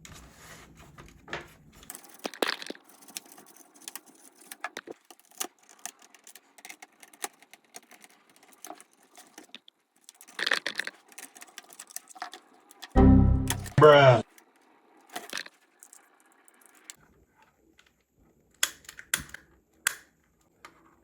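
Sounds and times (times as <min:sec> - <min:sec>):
rustling scrape: 0:00.0 - 0:05.0.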